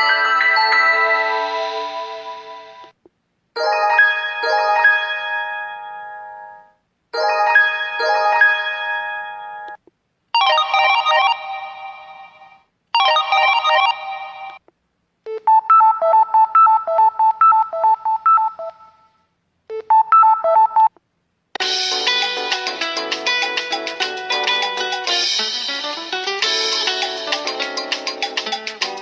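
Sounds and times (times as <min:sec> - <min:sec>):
beeping phone melody: 0:00.0 - 0:02.9, 0:10.4 - 0:12.4, 0:13.0 - 0:14.6, 0:15.3 - 0:20.9
chiming phone alert chords: 0:00.0 - 0:02.9, 0:03.6 - 0:09.8, 0:10.4 - 0:14.6
polyphonic ringtone: 0:00.0 - 0:02.9, 0:03.6 - 0:09.8, 0:10.4 - 0:14.6, 0:15.3 - 0:20.9.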